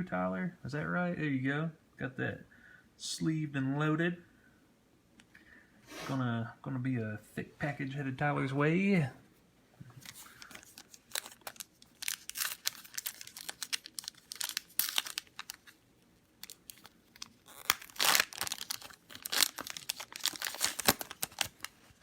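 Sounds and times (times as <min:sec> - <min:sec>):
wrapper crinkling and tearing: 0:10.0 - 0:22.0.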